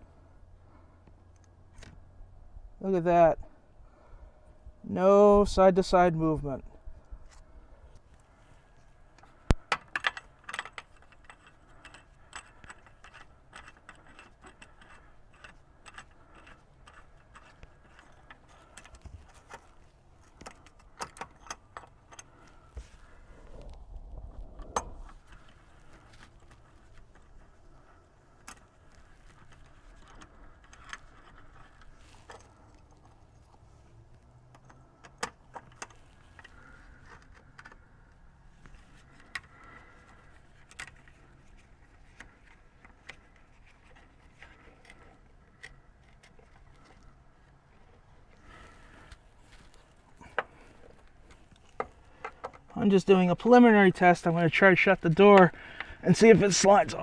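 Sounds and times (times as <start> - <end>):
hand tools clicking and tapping: 9.5 - 22.9, 48.3 - 52.8
low rumble: 23.2 - 25.3.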